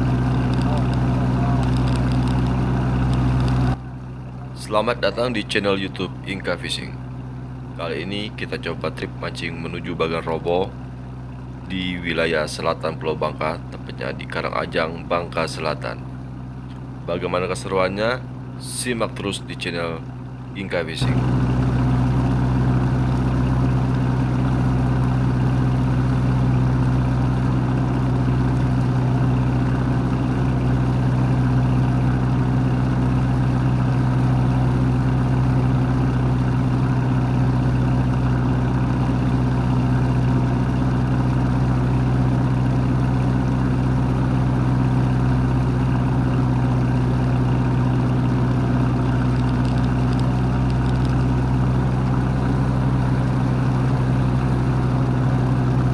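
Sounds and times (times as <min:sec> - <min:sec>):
boat engine droning: 0:00.0 - 0:55.9
water wash: 0:21.2 - 0:55.9.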